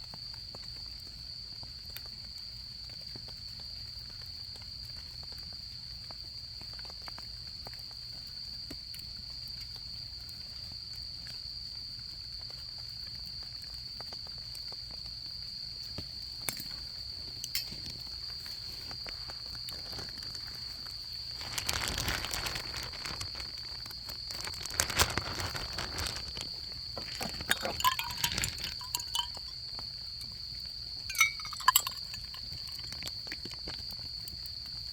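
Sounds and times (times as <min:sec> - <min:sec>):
crickets trilling: 0:00.0 - 0:34.9
rustling: 0:20.0 - 0:29.5, 0:31.1 - 0:33.7
bright clinks: 0:27.1 - 0:29.6, 0:31.1 - 0:33.1.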